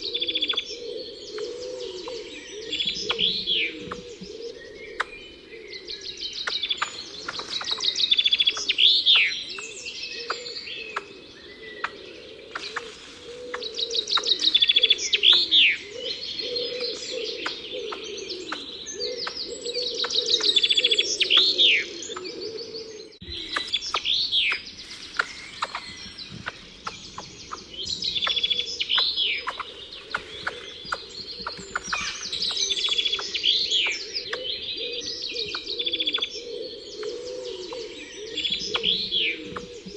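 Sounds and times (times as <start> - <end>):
dove-like cooing: 0.0 - 39.9
songbirds chirping and singing: 0.0 - 39.9.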